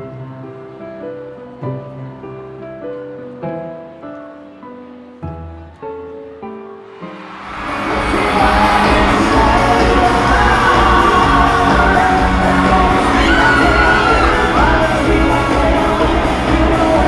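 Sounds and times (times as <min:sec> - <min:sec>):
pop band with steady beat: 0:07.2 - 0:17.0.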